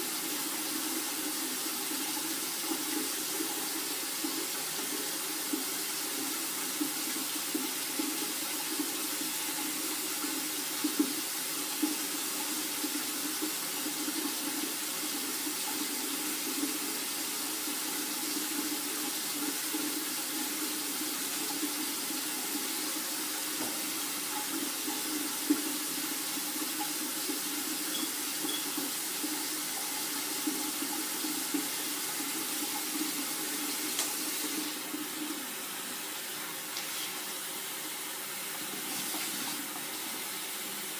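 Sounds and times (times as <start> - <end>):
water running and splashing: 0.0 - 40.9.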